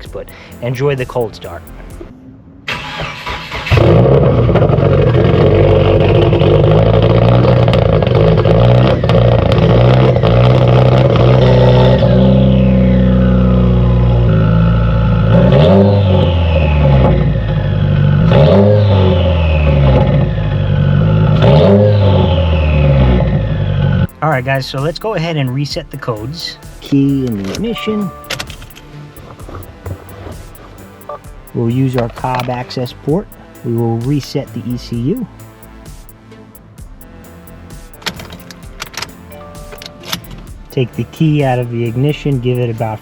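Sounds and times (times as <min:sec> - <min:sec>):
car engine idling and revving: 0:00.0 - 0:43.0
starter motor cranking: 0:02.7 - 0:11.4.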